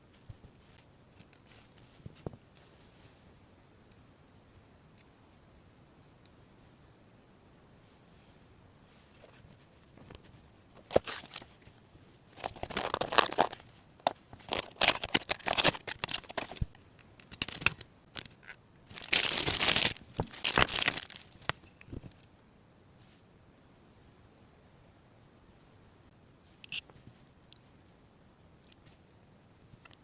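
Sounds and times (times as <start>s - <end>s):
plastic packaging crinkling: 12.4s - 22.0s.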